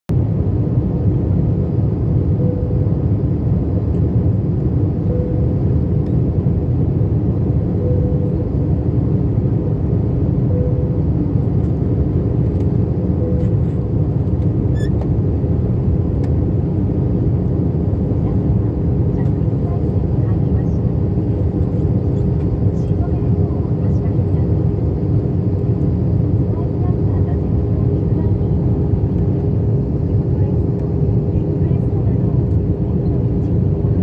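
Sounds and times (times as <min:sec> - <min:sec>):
airplane cabin engine roar: 0:00.1 - 0:34.0
single-tone cabin chime: 0:05.1 - 0:05.6.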